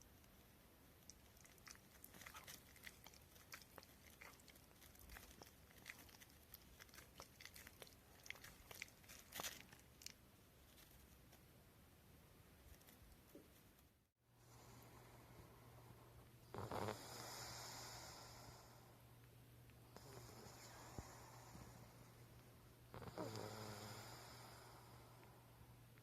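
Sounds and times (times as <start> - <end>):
dog crunching food: 1.0 - 10.2.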